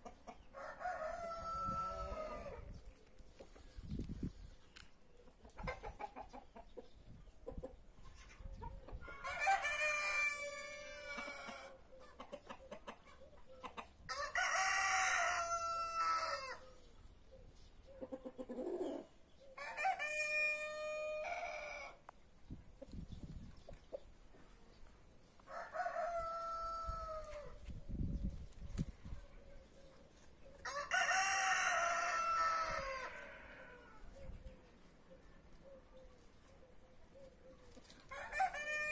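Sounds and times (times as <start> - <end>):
roosters crowing: 0.5 - 2.7, 9.0 - 11.8, 14.1 - 16.8, 19.6 - 22.1, 25.4 - 27.6, 30.6 - 34.2, 38.1 - 38.9.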